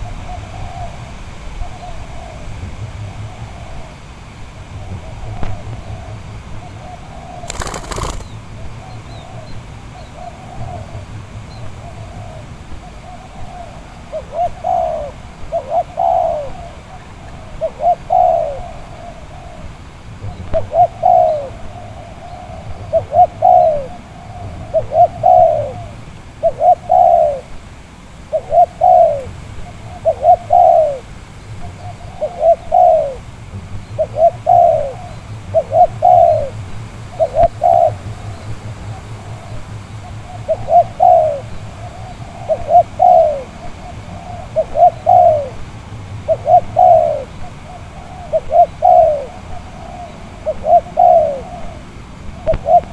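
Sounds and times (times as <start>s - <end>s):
dove cooing: 6.8s - 8.4s, 11.8s - 19.7s, 20.6s - 27.6s, 28.3s - 33.3s, 33.9s - 52.9s.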